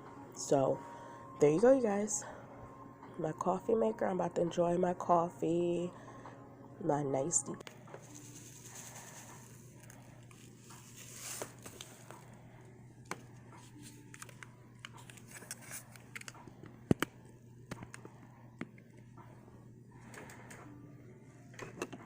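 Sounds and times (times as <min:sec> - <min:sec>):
faint steady hum: 0:00.0 - 0:22.0
crinkling of handled objects: 0:07.9 - 0:16.5
rustling: 0:08.0 - 0:12.2.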